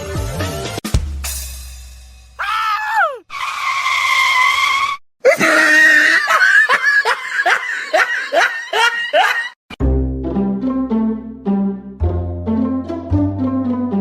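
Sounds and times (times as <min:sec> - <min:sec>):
short rising cries: 0:02.4 - 0:03.5.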